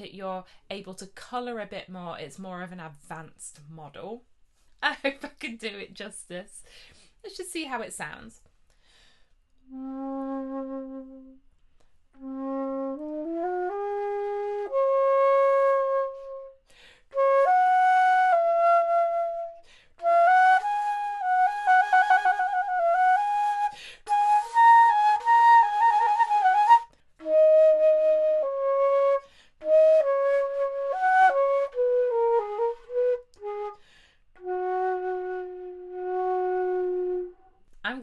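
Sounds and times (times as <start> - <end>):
flute playing solo: 9.7 - 11.4, 12.2 - 33.8, 34.4 - 37.6.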